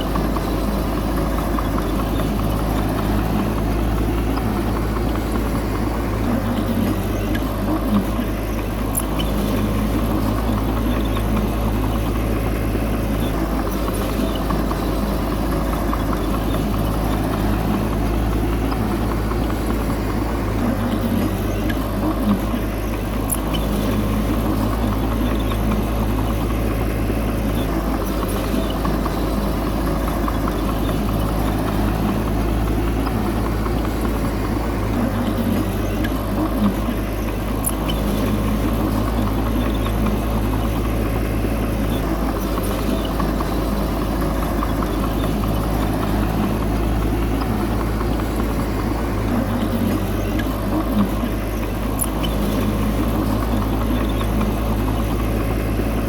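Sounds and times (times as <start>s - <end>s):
heavy diesel engine running: 0.0s - 56.0s.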